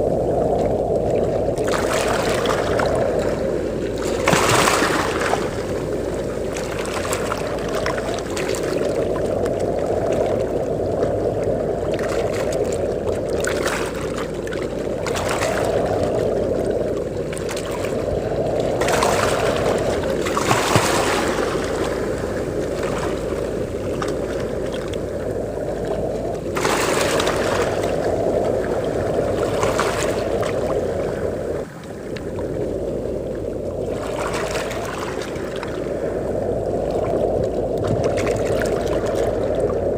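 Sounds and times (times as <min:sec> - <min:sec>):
waves breaking and washing in: 0:00.0 - 0:39.9
wind: 0:00.0 - 0:39.9.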